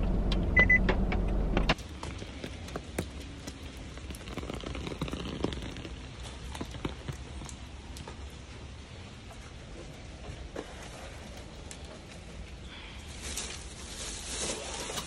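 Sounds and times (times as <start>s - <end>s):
sharp taps of raindrops: 1.7s - 8.4s
steady rain: 1.8s - 10.1s.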